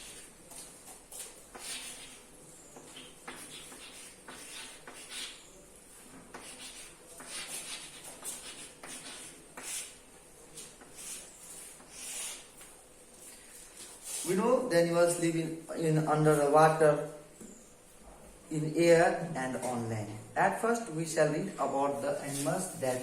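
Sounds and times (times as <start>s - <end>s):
scratchy writing on a board: 1.1s - 5.6s, 6.2s - 10.0s, 10.6s - 12.7s.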